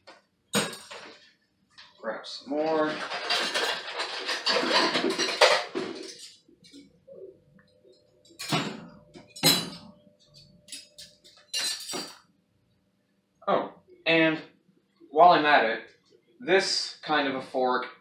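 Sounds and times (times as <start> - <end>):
cutlery clinking into basket: 0.6 - 1.0, 2.8 - 6.4, 8.3 - 9.9, 10.7 - 12.2
silverware clattering: 0.6 - 1.1, 2.8 - 6.8, 8.2 - 12.2.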